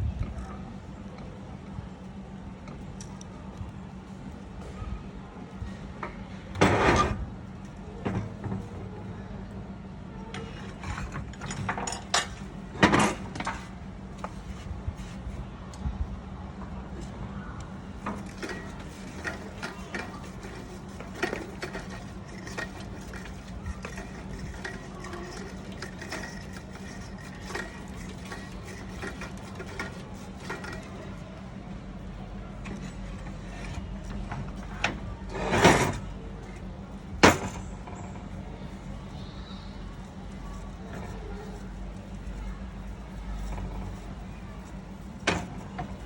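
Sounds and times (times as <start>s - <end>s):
steady low hum: 0.0s - 46.0s
metal parts clicking and tapping: 10.3s - 14.3s, 18.0s - 31.3s, 32.6s - 38.8s, 40.0s - 46.0s.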